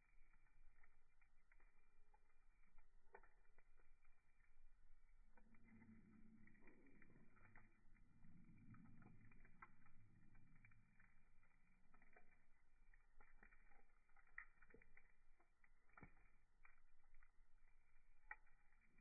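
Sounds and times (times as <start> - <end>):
low rumble of burning: 0.0 - 19.0
wood fire crackling: 0.0 - 19.0.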